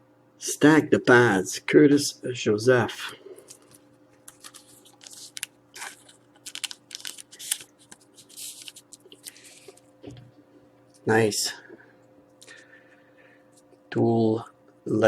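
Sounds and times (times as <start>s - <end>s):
cards rustling and scraping: 3.4s - 9.9s.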